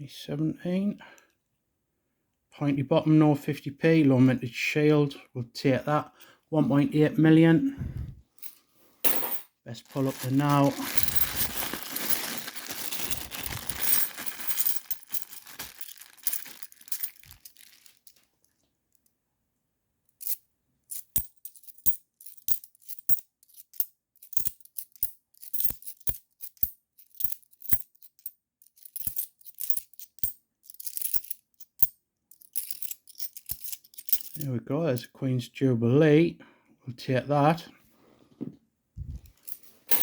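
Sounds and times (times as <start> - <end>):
coins clinking in a bag: 8.4 - 18.2, 20.2 - 34.4, 39.3 - 40.0
coins clicked on hard surface: 9.1 - 9.5, 39.5 - 40.0.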